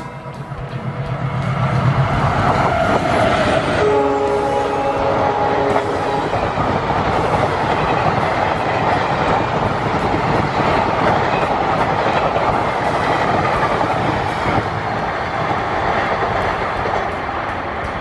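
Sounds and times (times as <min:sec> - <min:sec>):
passenger train rumbling past: 0:00.0 - 0:18.0
locomotive horn: 0:03.5 - 0:08.6.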